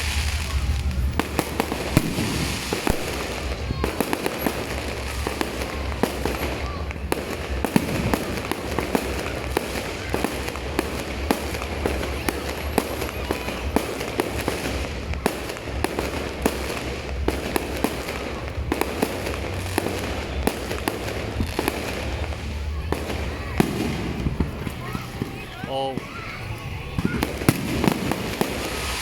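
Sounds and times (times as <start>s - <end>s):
continuous noisy background: 0.0s - 29.0s
fireworks popping and banging: 0.0s - 29.0s.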